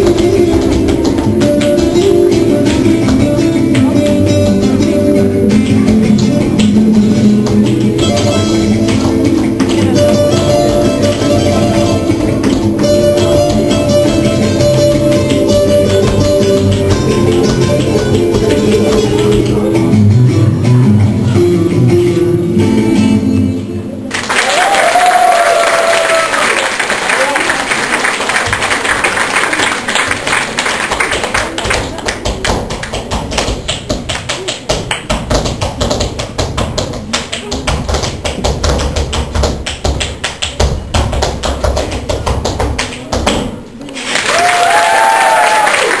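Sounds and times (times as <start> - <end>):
flamenco guitar music: 0.0 - 24.1, 29.9 - 43.9
people cheering: 24.1 - 30.4, 44.0 - 46.0
audience applause: 24.1 - 32.2, 44.0 - 46.0
person shouting or cheering: 24.4 - 26.6, 44.2 - 46.0.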